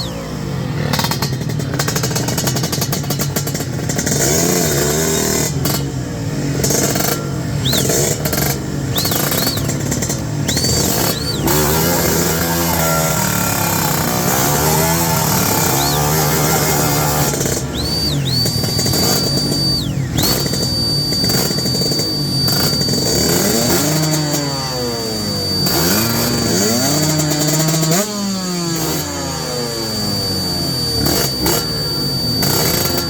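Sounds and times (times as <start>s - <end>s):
motorcycle engines revving: 0.0s - 33.0s
short high chirps: 7.6s - 27.8s, 28.8s - 33.0s.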